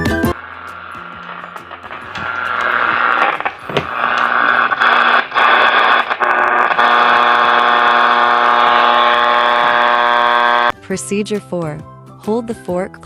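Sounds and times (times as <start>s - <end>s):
buzzing hum: 0.1s - 10.7s
radio static hiss: 0.3s - 10.7s.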